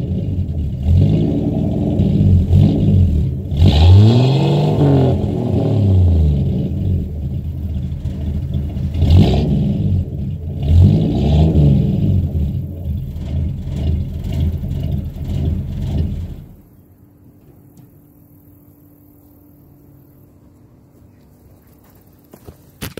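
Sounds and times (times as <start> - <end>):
car engine revving: 0.0 - 16.7.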